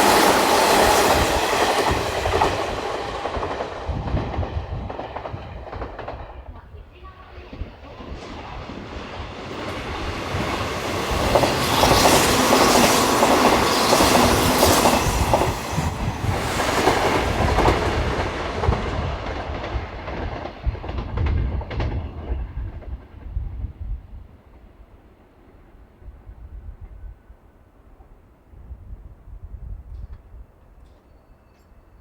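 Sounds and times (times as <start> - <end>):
electric train passing: 0.0 - 26.8
train wheels clicking over rail joints: 9.5 - 23.0.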